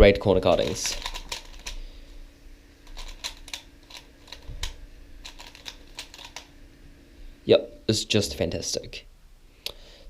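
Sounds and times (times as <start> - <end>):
plastic puzzle clicking: 0.5 - 1.8.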